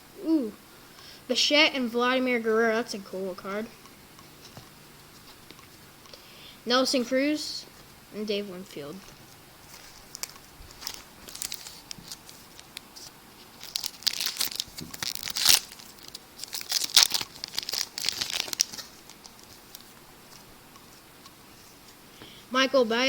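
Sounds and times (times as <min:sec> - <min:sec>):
foil wrapper tearing and crinkling: 0:09.7 - 0:20.5.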